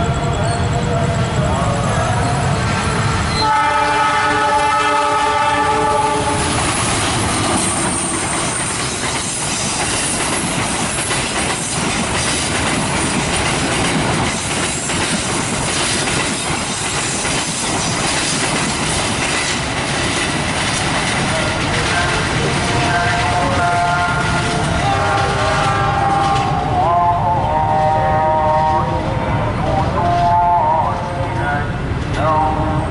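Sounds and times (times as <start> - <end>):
train wheels rushing on rails: 0.0 - 32.9
train horn: 3.3 - 6.6, 21.4 - 31.6
clickety-clack over rail joints: 5.9 - 27.2, 29.6 - 32.4.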